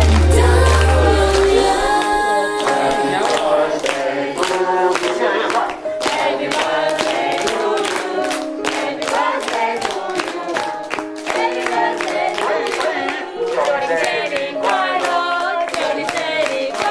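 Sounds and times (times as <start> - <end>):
sharp steady beat: 0.0 - 1.7
group of people singing: 0.0 - 16.9.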